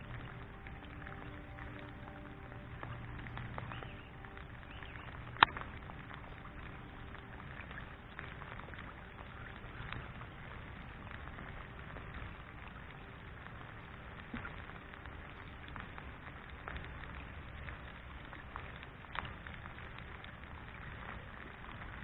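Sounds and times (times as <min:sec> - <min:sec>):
rain pattering: 0:00.0 - 0:22.0.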